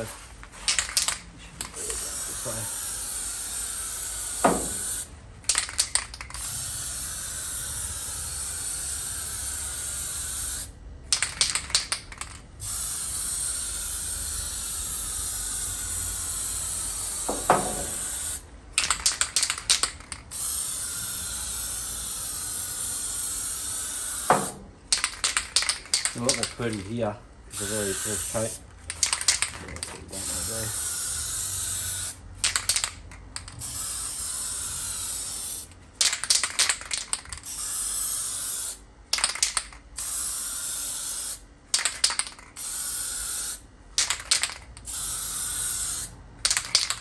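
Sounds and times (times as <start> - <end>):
aerosol can spraying: 16.3 - 18.4, 23.5 - 24.6.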